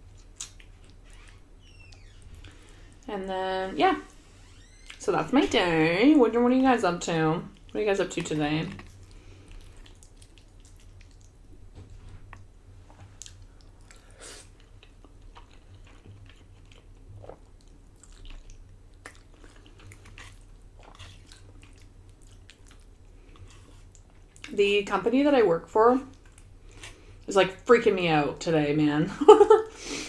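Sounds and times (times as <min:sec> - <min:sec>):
steady low hum: 0:00.0 - 0:29.8
person chewing food: 0:00.1 - 0:01.1, 0:08.8 - 0:24.5, 0:26.1 - 0:27.3.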